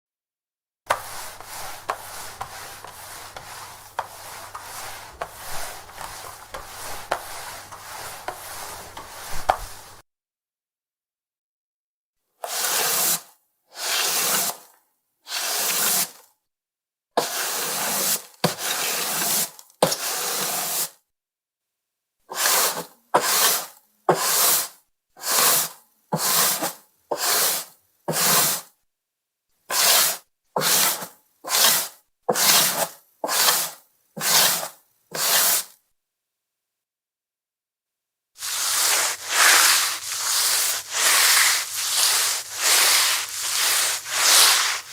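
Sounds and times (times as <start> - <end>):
mop swishing on wooden floor: 0.9 - 10.0, 22.4 - 28.6, 29.7 - 35.7, 38.4 - 44.9.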